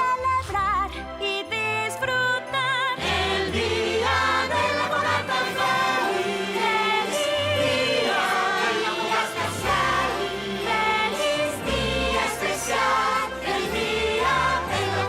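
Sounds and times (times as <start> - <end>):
orchestral music: 2.8 - 15.0
choir singing: 3.0 - 15.0.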